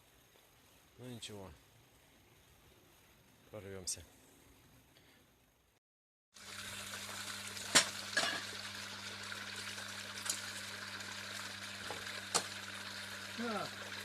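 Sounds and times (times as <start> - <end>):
hiss of running water: 6.3 - 14.0.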